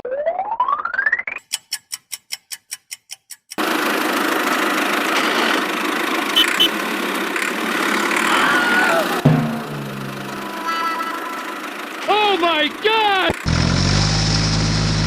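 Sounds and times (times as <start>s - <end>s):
small engine running rattly: 3.6s - 9.3s, 10.0s - 15.0s.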